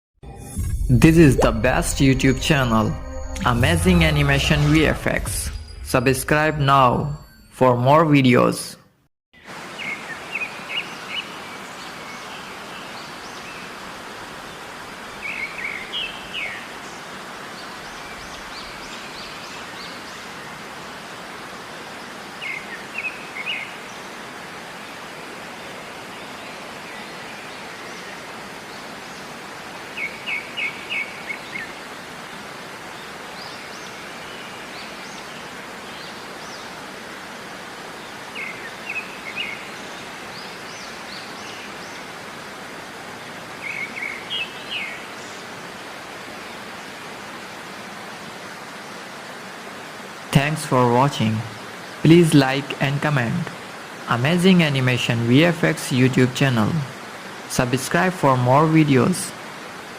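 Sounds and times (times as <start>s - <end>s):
waterfall rushing water: 9.4s - 59.9s
birds chirping: 37.7s - 42.2s, 43.2s - 45.8s.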